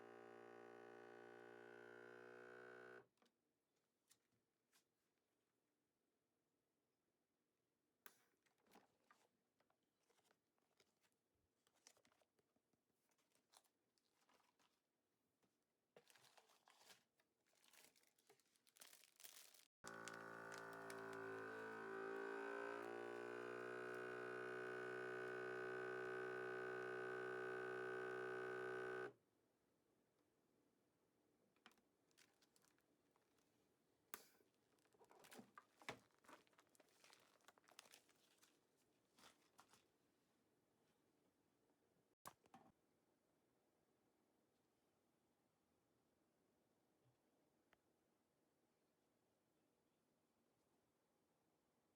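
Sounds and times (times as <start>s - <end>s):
plastic bags crinkling: 17.6s - 21.2s.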